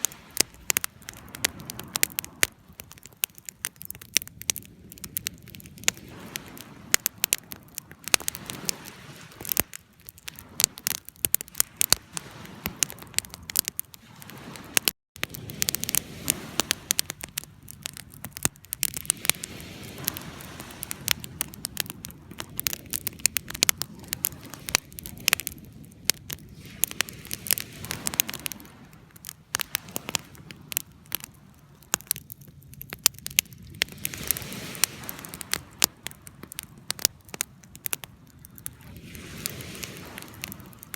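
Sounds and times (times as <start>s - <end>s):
fire crackling: 0.0s - 40.9s.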